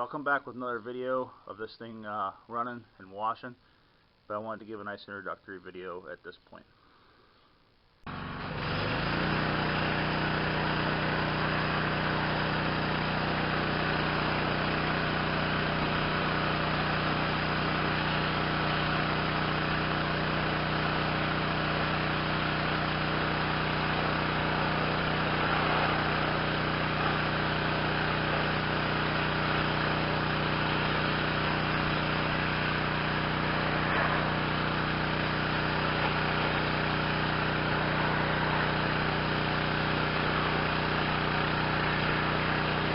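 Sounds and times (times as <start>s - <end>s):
pressure washer engine running: 8.1s - 42.9s.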